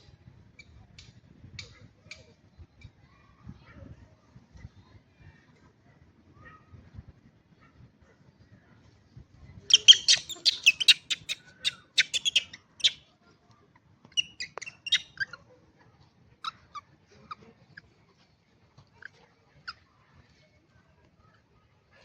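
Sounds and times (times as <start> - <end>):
monkeys squealing and chirping: 9.7 - 13.0, 14.2 - 15.4.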